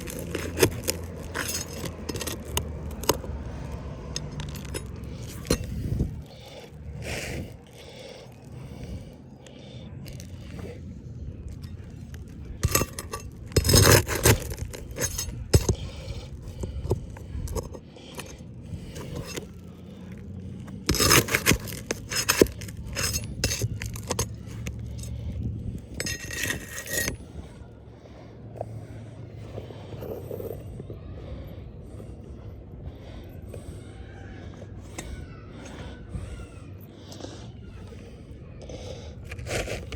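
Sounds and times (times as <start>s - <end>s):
small hard parts clinking and rattling: 0.0s - 9.0s, 10.0s - 27.7s, 28.6s - 32.2s
steady low hum: 0.0s - 39.9s.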